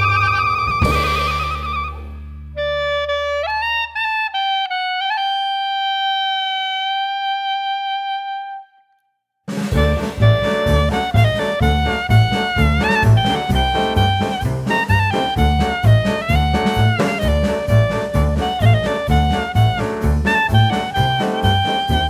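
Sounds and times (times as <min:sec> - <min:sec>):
band playing: 0:00.0 - 0:03.4, 0:09.5 - 0:22.0.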